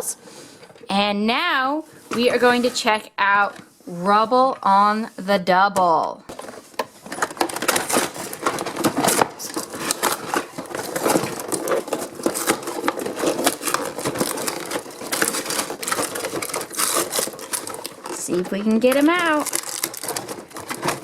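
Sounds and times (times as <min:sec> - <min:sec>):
toy packaging clicks and crinkles: 0:06.3 - 0:21.0.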